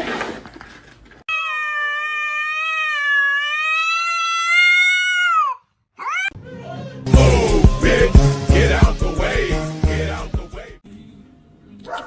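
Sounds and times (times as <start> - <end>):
cat meowing: 1.3 - 6.4.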